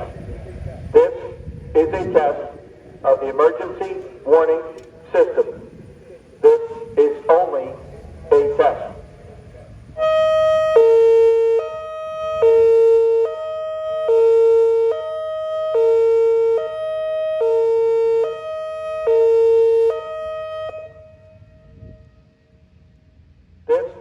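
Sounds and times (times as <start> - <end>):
electronic siren hi-lo tone: 10.0 - 22.4.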